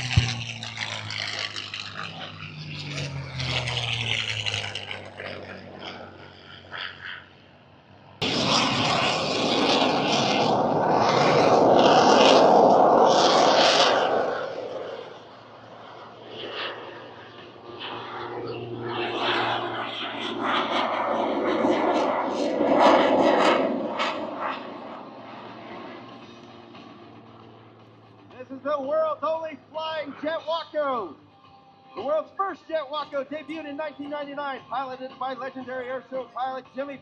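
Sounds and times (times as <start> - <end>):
aircraft flying past: 0.0 - 37.0
loud rushing pass: 8.2 - 26.0.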